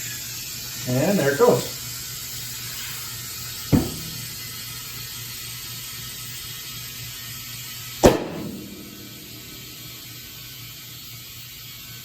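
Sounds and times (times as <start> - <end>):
air hissing into a tire: 0.0 - 12.0
tire bead popping: 3.6 - 5.2, 8.0 - 10.6.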